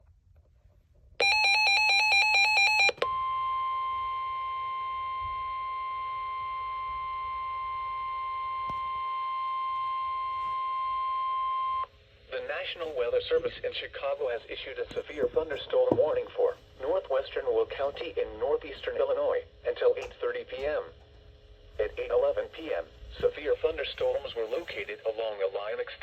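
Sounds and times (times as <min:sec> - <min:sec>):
steady single-pitch alarm tone: 0:01.2 - 0:12.0.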